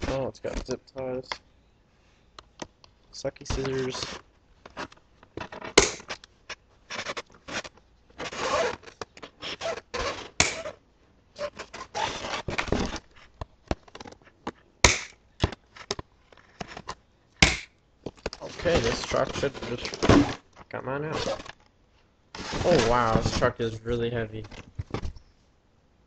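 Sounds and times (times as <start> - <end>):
packaging rustling and scraping: 3.5 - 10.8, 11.4 - 14.6, 15.5 - 17.0, 18.1 - 21.6, 22.4 - 23.6
sharp snaps: 5.8 - 6.3, 10.4 - 10.7, 14.8 - 15.2, 17.4 - 17.8.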